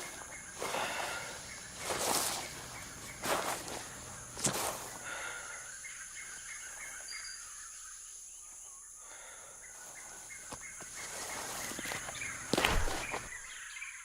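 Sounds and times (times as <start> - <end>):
rustle: 0.0 - 5.0
bird chirping: 0.0 - 14.0.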